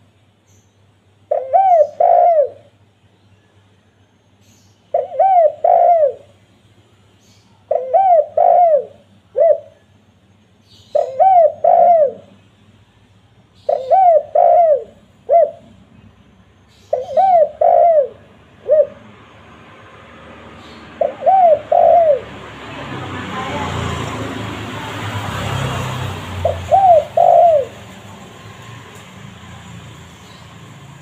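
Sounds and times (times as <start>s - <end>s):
dove cooing: 1.3s - 2.7s, 4.9s - 6.3s, 7.7s - 9.8s, 10.9s - 12.4s, 13.6s - 15.8s, 16.8s - 19.2s, 20.6s - 22.7s, 26.3s - 28.0s.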